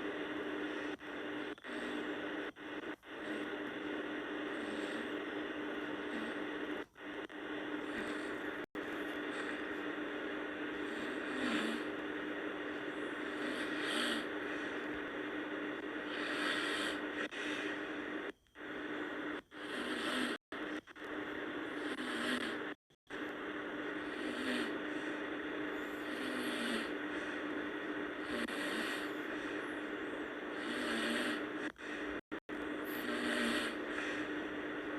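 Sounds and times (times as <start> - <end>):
person snoring: 0.0 - 18.2, 19.0 - 20.9, 21.6 - 22.8, 23.8 - 32.2, 32.8 - 34.9
steady hiss and low hum: 0.0 - 34.9.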